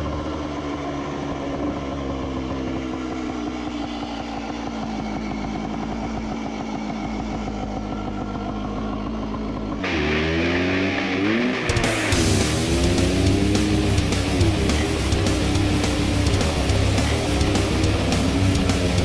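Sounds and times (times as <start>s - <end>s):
motorcycle engine running: 0.0s - 19.0s
heavy metal guitar music: 9.8s - 19.0s.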